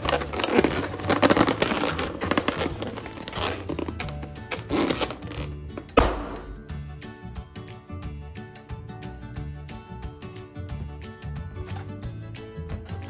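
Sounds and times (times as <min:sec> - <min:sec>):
balloon rubbing and squeaking: 0:00.0 - 0:06.5
balloon popping: 0:00.0 - 0:06.9.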